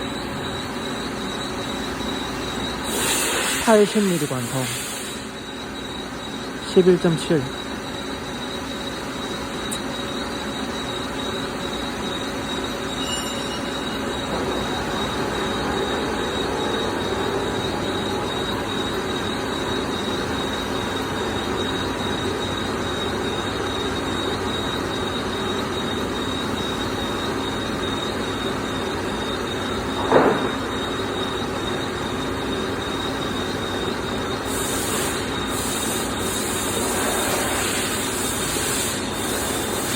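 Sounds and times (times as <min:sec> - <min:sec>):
brief loud squeal: 0:12.9 - 0:14.1.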